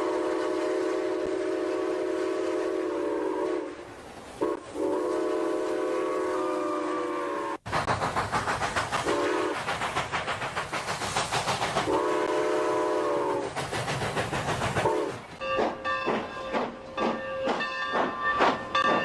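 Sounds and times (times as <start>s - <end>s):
multi-tone train whistle: 0.0s - 3.8s, 4.4s - 7.7s, 9.0s - 9.7s, 11.9s - 13.5s, 14.8s - 16.2s
fast train chugging: 4.4s - 19.0s.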